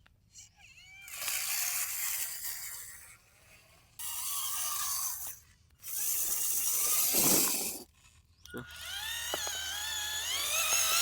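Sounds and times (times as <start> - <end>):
small electric motor gear whirr: 0.3 - 11.0.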